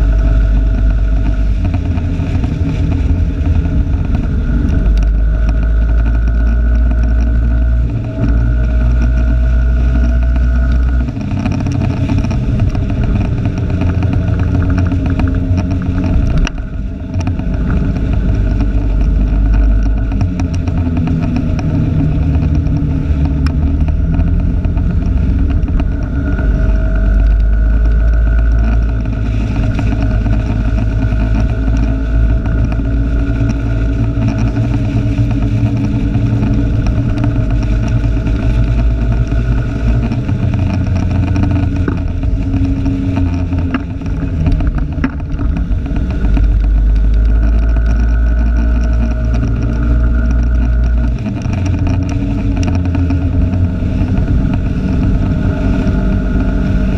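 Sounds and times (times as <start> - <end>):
vehicle engine running: 0.0 - 56.9.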